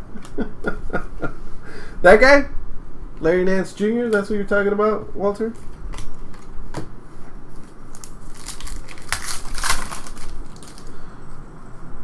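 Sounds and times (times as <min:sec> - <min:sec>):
plastic wrapper crinkling and tearing: 0:07.6 - 0:11.0.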